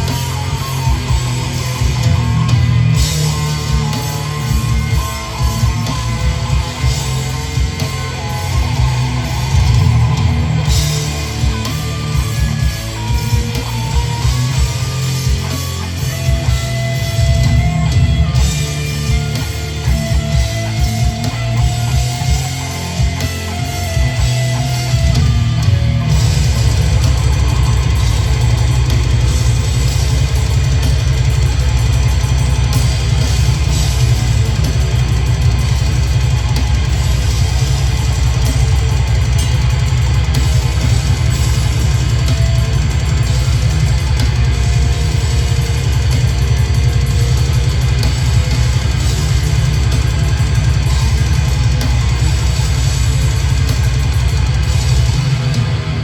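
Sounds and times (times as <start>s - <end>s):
heavy metal band playing live: 0.0s - 56.0s.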